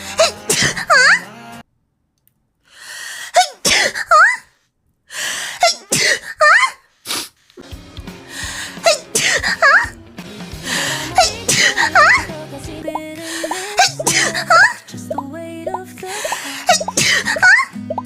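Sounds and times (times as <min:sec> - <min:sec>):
person sneezing: 0:03.4 - 0:04.5, 0:05.6 - 0:06.4, 0:07.0 - 0:07.4, 0:08.8 - 0:09.7, 0:11.2 - 0:12.2, 0:13.3 - 0:14.5, 0:16.7 - 0:17.5.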